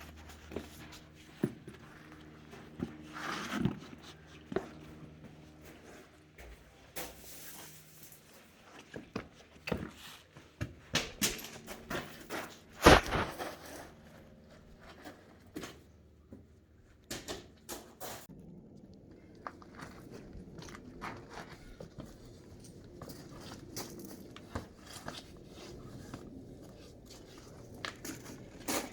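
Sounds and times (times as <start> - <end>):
footsteps on rock and gravel: 11.7 - 14.8.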